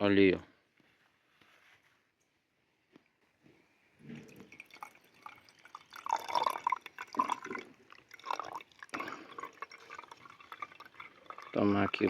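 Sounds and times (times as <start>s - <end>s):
coffee being poured: 4.0s - 12.0s.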